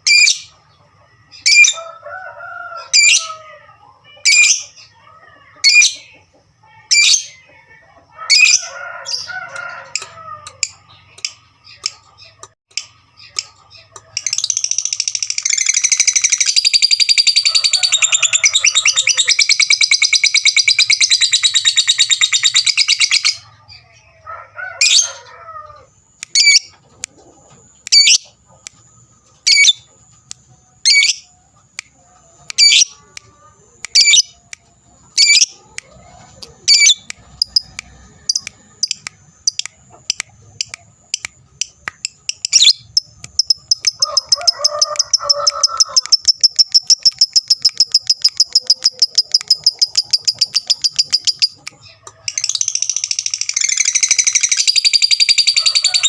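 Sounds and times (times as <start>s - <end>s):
bird chattering trill: 12.8s - 23.4s, 26.3s - 26.7s, 27.9s - 28.3s, 29.4s - 29.8s, 30.8s - 31.3s, 32.5s - 33.0s, 33.9s - 34.4s, 35.1s - 35.6s, 36.4s - 56.0s
bird sharp chirps: 36.4s - 56.0s.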